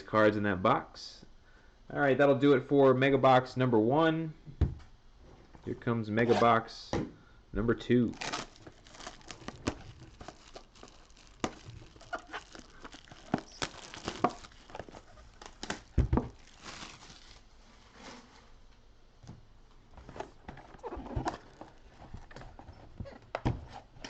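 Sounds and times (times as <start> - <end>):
crinkling wrapper and cardboard: 8.0 - 18.6, 20.2 - 23.2.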